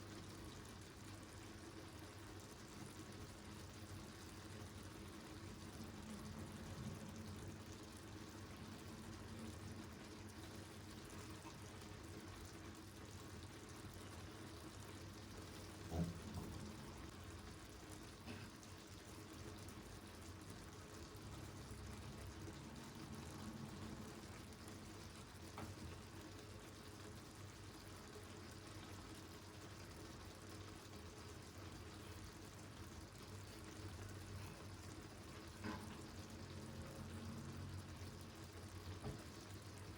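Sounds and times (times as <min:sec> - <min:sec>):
faint kitchen hiss and hum: 0:00.0 - 0:39.9.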